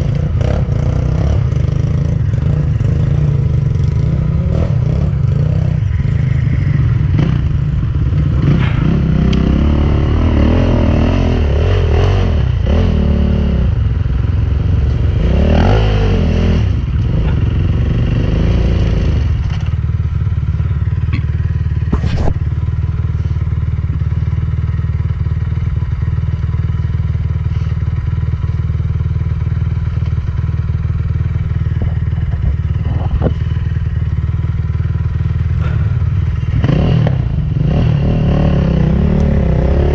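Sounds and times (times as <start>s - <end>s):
dirt bike engine revving: 0.0s - 13.9s, 14.6s - 19.6s, 35.2s - 39.9s.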